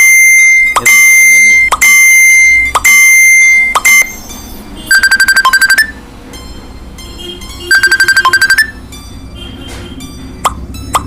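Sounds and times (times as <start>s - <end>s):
fast trill of electronic beeps: 0.0s - 4.2s, 4.9s - 6.0s, 7.0s - 8.8s
steady high beep tone: 0.0s - 4.2s, 4.8s - 8.9s.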